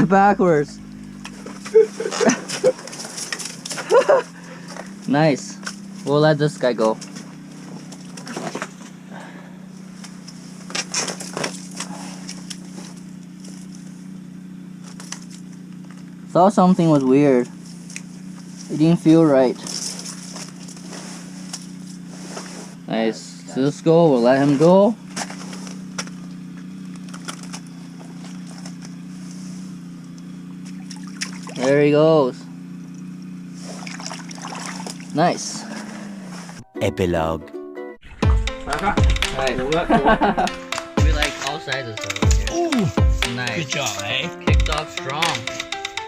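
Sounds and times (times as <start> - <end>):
steady low hum: 0.0 - 36.7, 38.1 - 45.1.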